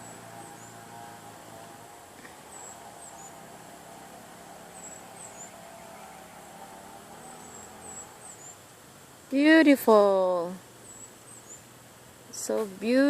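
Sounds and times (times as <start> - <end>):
small bird chirps: 2.4 - 8.7, 10.8 - 11.7.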